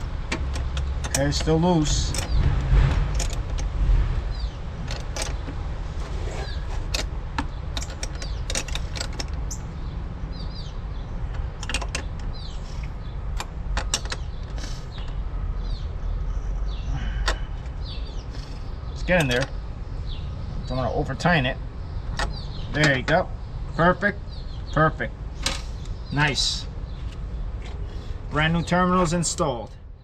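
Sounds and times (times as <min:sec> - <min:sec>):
wrench clicking and scraping metal: 0:00.0 - 0:03.7, 0:04.4 - 0:09.6, 0:11.4 - 0:15.1, 0:17.2 - 0:19.5.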